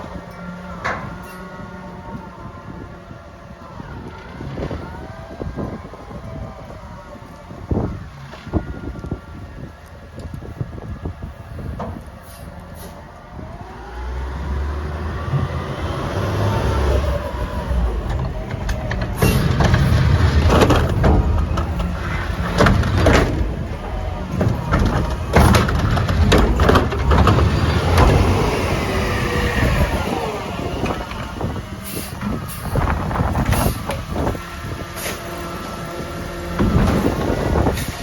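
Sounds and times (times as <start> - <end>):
diesel engine under load: 0.0 - 38.0
metal clanks and knocks: 18.0 - 28.5.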